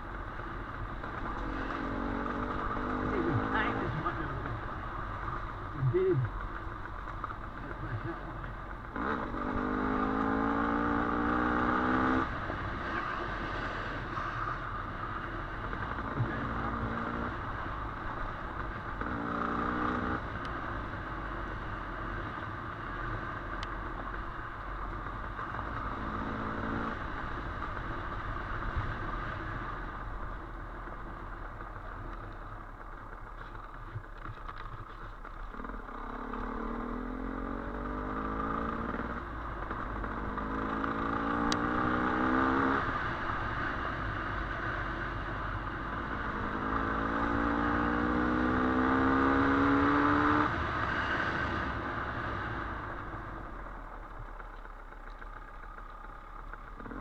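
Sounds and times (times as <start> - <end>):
bike rattling over rough ground: 0.0 - 9.2, 27.2 - 37.4, 53.0 - 57.0
dirt bike engine revving: 1.5 - 4.5, 8.9 - 14.5, 35.5 - 39.2, 40.0 - 43.4.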